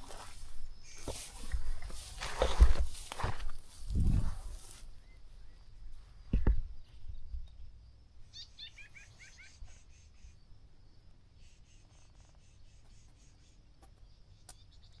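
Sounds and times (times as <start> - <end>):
faint low rumble: 0.0 - 6.0
rapid high bird twittering: 8.3 - 10.4.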